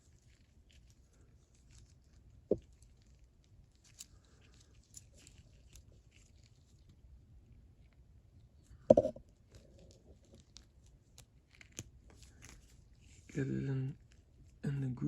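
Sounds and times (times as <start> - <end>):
sharp knock: 8.9 - 9.2.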